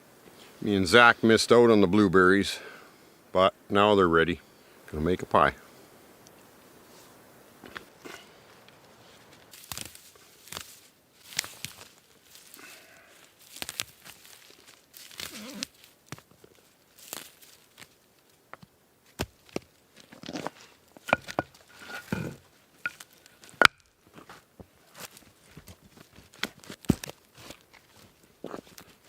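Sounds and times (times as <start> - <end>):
rustling and crinkling: 6.3 - 29.0.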